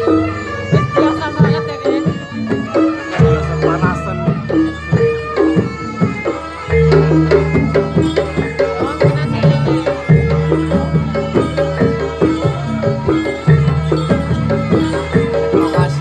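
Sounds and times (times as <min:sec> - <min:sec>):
metallophone melody: 0:00.0 - 0:16.0.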